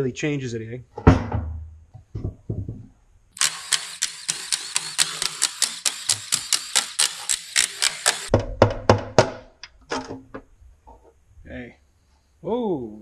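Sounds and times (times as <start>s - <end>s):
power ratchet hissing and clicking: 3.4s - 8.3s.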